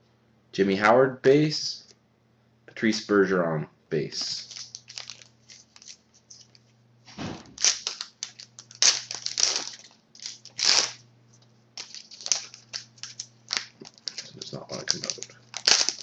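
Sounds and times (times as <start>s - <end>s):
card pack wrapper crinkling and tearing: 4.2s - 6.6s, 7.6s - 11.0s, 11.8s - 16.0s.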